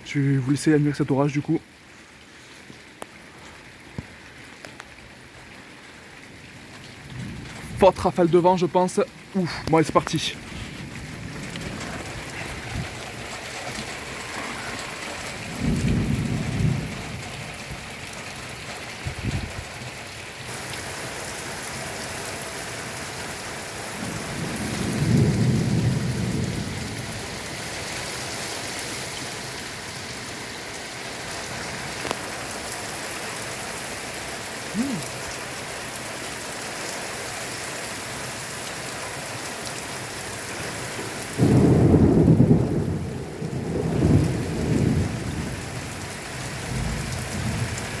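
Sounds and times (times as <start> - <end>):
torrential rain: 0.0 - 48.0
thunder rolling: 10.3 - 17.8, 24.0 - 27.4, 41.4 - 45.7.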